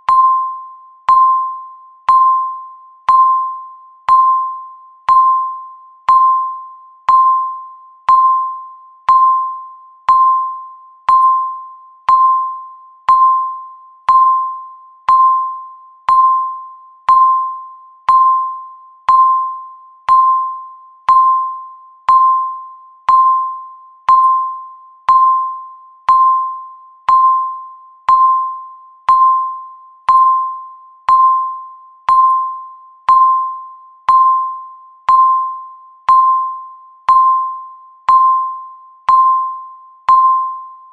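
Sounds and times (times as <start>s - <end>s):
countdown timer beeps: 0.0s - 40.9s.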